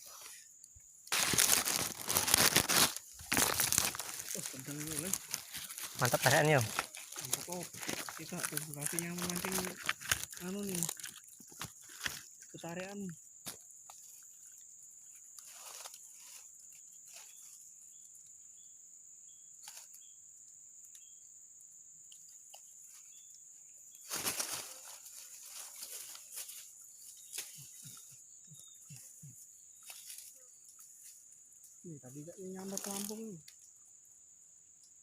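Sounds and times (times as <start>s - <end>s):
high-pitched insect drone: 0.0s - 17.6s, 24.1s - 33.7s
rustling in foliage: 0.0s - 18.2s, 19.6s - 20.2s, 22.2s - 34.1s.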